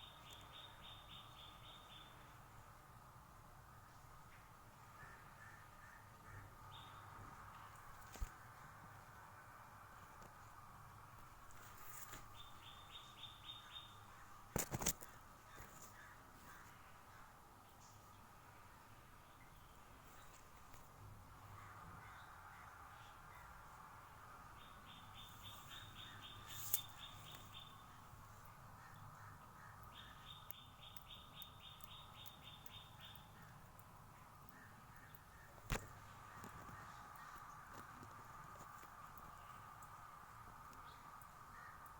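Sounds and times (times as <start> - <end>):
small bird chirping: 0.0 - 2.4, 11.5 - 16.8, 24.5 - 41.9
crow cawing: 5.0 - 6.6, 15.5 - 17.3, 21.6 - 23.6, 41.5 - 41.9.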